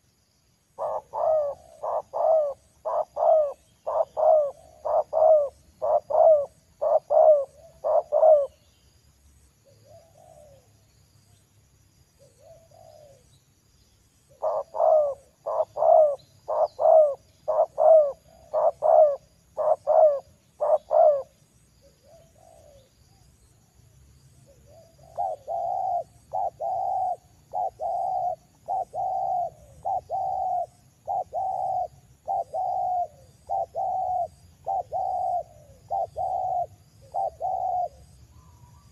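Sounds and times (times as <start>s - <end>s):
dove cooing: 0.8s - 8.6s, 9.6s - 10.7s, 12.2s - 13.3s, 14.3s - 22.9s, 24.5s - 38.9s.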